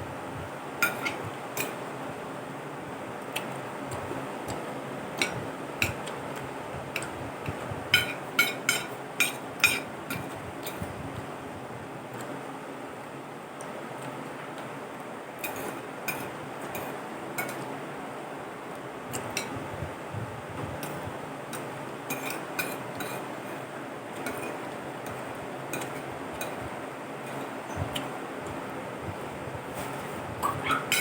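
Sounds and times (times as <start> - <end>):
cutlery clinking on a plate: 0.8 - 1.8, 7.9 - 10.2, 15.4 - 17.7.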